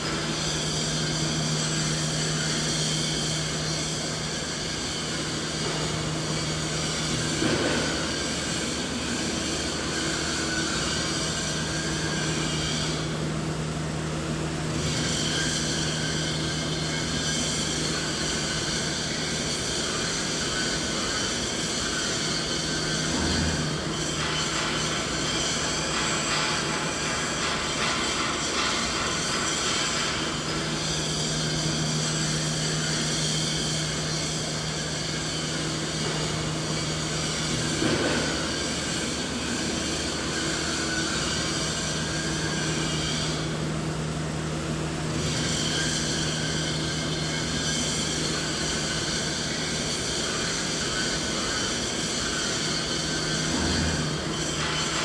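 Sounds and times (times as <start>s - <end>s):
machine humming and hissing: 0.0s - 55.0s.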